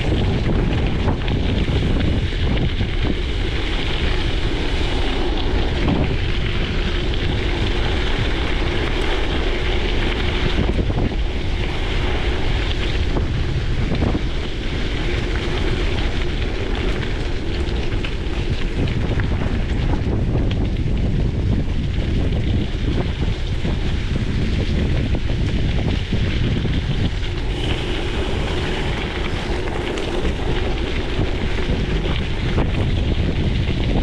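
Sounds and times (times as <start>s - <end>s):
wind buffeting microphone: 0.0s - 34.0s
tyres rolling on gravel: 22.2s - 34.0s.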